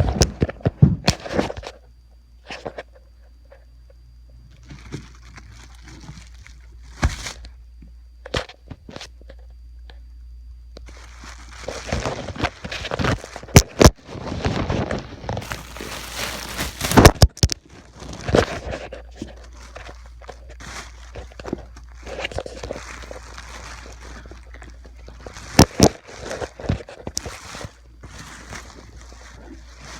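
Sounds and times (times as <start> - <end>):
packaging rustling and tearing: 4.5 - 7.5, 10.9 - 29.9.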